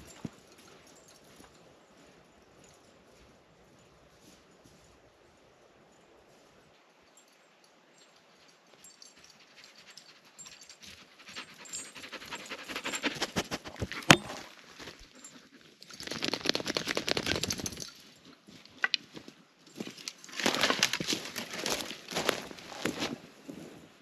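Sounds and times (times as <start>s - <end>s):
dog panting: 9.5s - 14.1s.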